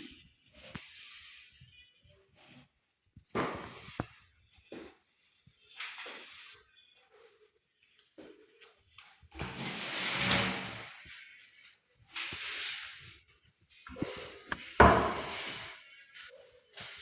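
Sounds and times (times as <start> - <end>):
broom sweeping dust: 12.2 - 17.0.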